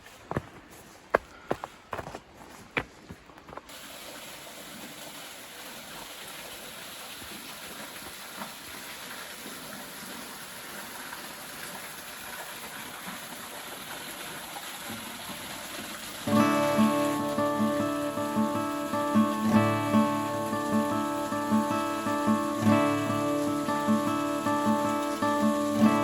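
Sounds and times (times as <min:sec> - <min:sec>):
footsteps: 0:00.0 - 0:03.8
waterfall rushing: 0:16.2 - 0:26.0.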